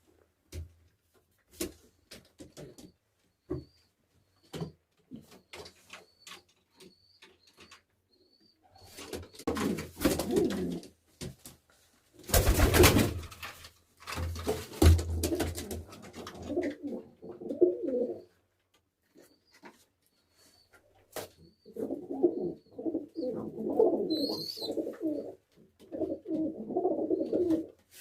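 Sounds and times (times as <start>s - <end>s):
pigeons cooing: 8.8s - 10.9s, 15.2s - 18.4s, 21.6s - 27.8s.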